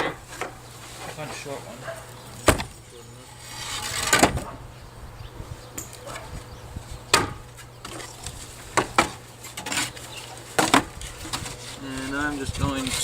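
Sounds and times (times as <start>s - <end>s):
wooden boards knocking together: 2.4s - 2.8s, 8.7s - 9.9s, 10.5s - 11.5s.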